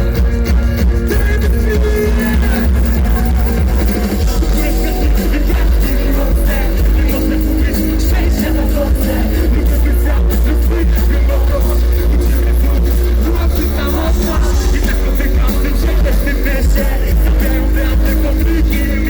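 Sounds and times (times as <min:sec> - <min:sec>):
heavy bass line: 0:00.0 - 0:19.0
live concert music: 0:00.0 - 0:19.0.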